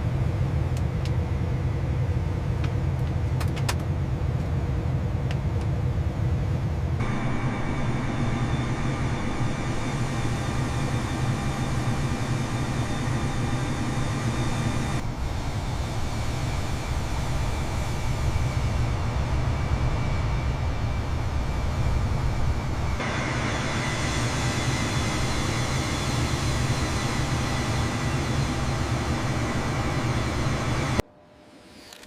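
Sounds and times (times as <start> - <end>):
jet engine rumble and hiss: 0.0 - 32.0
steady whine: 7.0 - 32.0.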